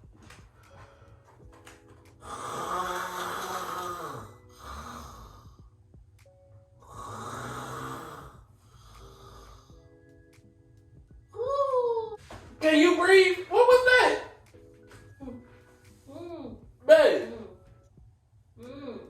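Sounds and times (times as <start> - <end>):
woman fake snoring: 2.2 - 5.4, 6.8 - 8.4.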